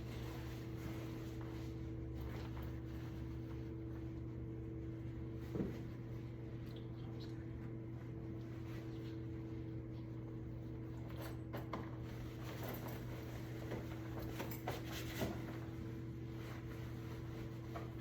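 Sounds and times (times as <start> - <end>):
low electrical hum: 0.0 - 18.0.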